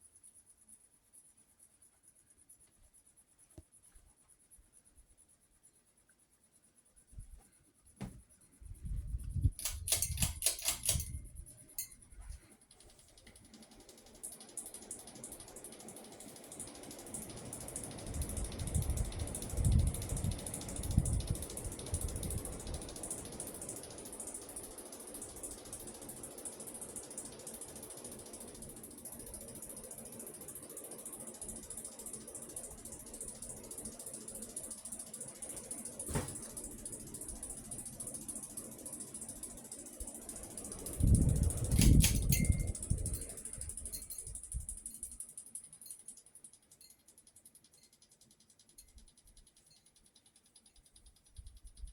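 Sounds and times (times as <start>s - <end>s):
ceiling fan whining and ticking: 0.0s - 51.9s
sharp click: 9.4s - 11.9s, 41.7s - 43.2s.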